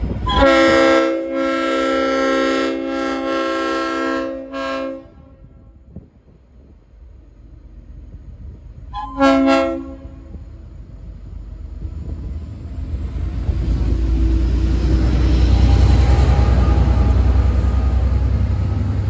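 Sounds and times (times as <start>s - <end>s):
diesel locomotive engine rumble: 0.0s - 19.0s
train air horn blast: 0.2s - 5.7s, 8.9s - 10.4s.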